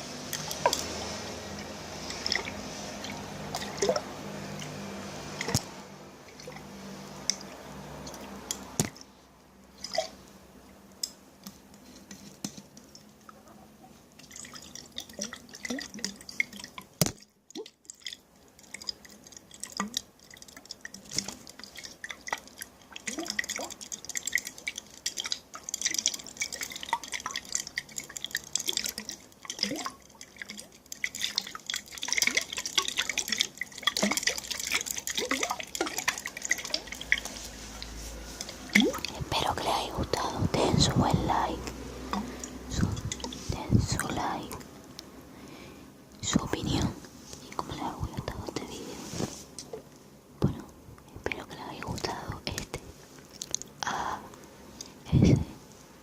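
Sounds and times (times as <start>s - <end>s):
water dripping in container: 0.2s - 9.1s, 9.7s - 10.2s, 14.2s - 45.1s, 51.3s - 55.4s.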